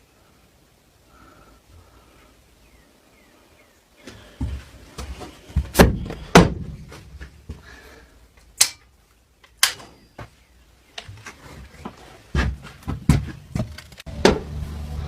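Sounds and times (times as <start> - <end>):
sharp knocks and clunks: 4.4 - 7.6, 11.0 - 14.6.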